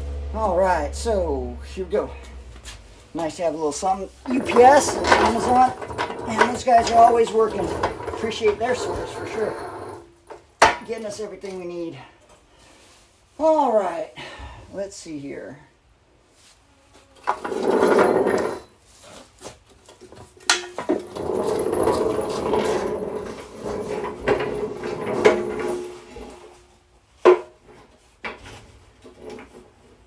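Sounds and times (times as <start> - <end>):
wooden boards scraping: 1.7 - 10.9, 17.3 - 19.6, 20.6 - 30.0.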